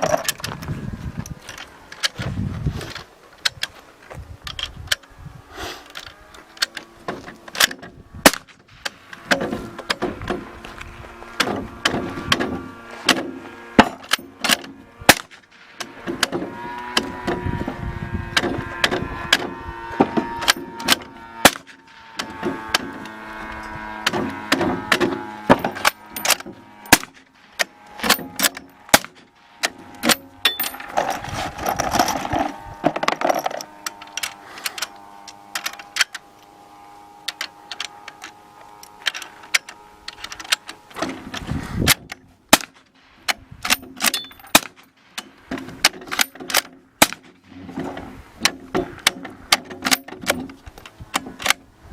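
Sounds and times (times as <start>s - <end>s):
suppressed gunshots: 7.6s - 9.4s.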